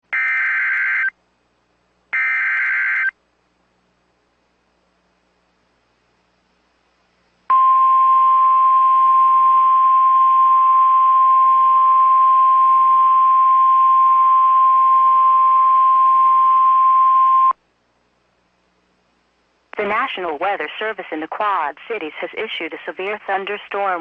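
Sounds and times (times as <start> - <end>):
alarm tone beep: 7.5 - 17.6
radio hiss: 19.7 - 24.0.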